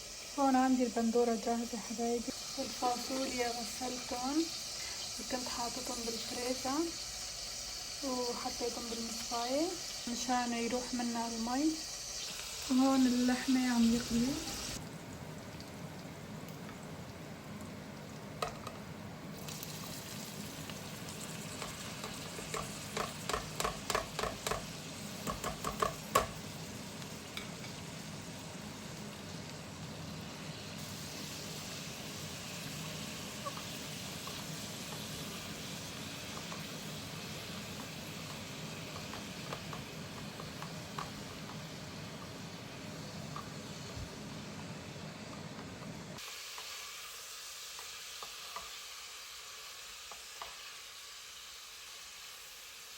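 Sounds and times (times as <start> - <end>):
food sizzling in hot oil: 0.0 - 52.9
spoon knocking against pan: 21.6 - 26.4.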